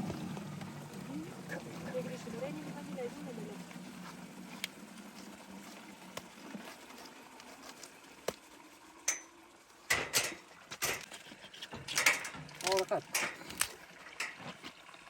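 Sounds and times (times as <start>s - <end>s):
metal utensils clattering: 9.0s - 14.7s
metal pot and utensils clinking: 9.0s - 14.8s.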